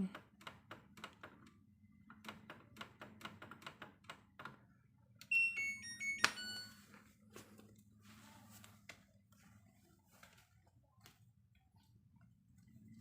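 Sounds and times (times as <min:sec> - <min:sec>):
electronic beep tune: 0:05.3 - 0:06.8.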